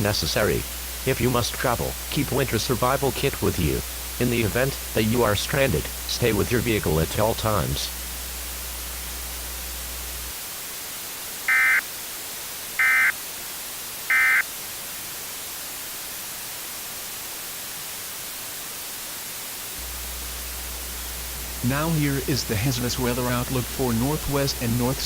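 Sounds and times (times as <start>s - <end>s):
low hum: 0.0s - 10.3s, 19.8s - 25.0s
steady hiss: 0.0s - 25.0s
digital data tone bursts: 11.5s - 11.8s, 12.8s - 13.2s, 14.1s - 14.4s.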